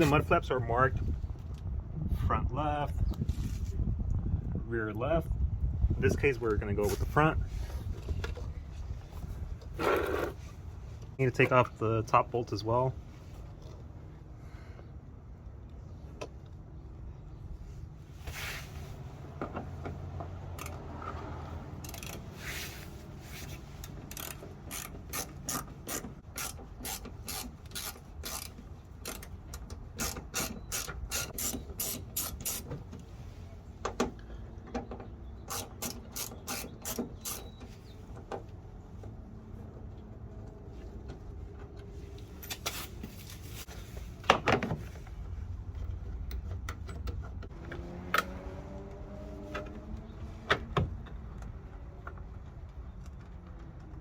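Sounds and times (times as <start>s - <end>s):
ratchet clicking: 21.8s - 22.2s, 24.1s - 29.3s, 30.0s - 32.7s, 35.5s - 37.5s.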